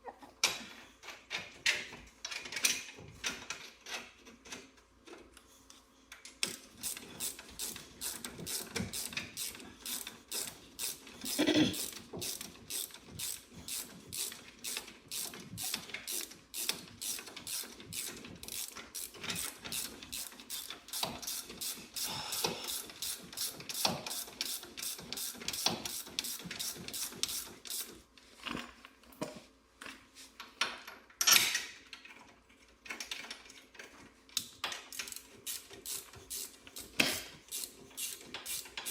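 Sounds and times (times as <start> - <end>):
ratchet wrench clicking: 6.4 - 27.9, 34.4 - 38.9.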